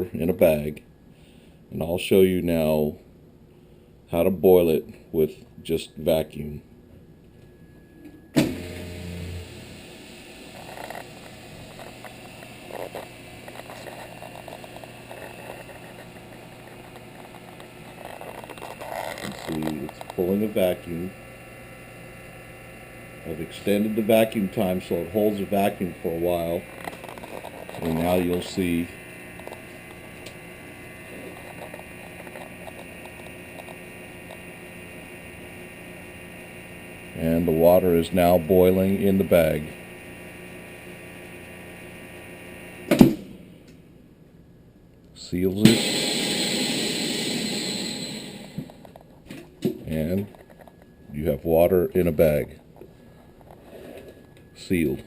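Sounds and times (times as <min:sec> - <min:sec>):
vacuum pump running: 0:08.3 - 0:43.2.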